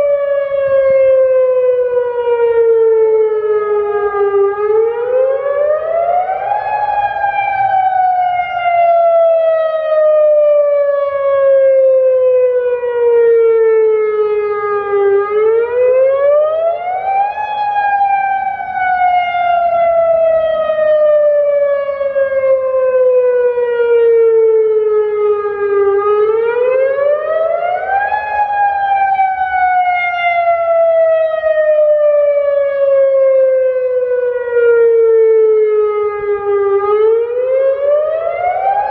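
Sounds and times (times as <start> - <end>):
warning siren rising and falling: 0.0 - 38.9.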